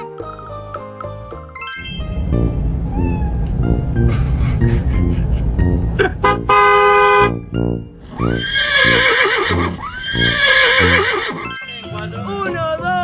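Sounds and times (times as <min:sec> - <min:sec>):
whinny-like animal calls: 0:08.0 - 0:11.6.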